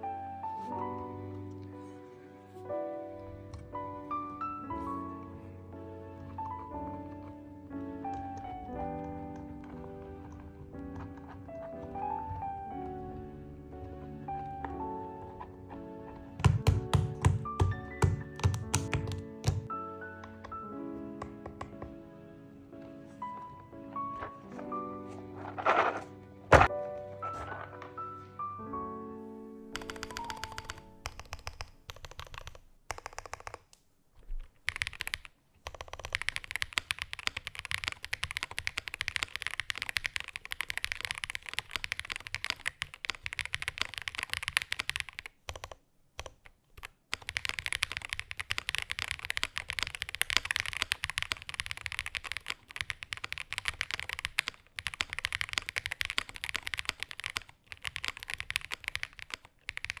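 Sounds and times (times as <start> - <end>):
mechanical keyboard typing: 16.3 - 20.6, 21.2 - 22.0, 29.7 - 33.8, 34.5 - 60.0.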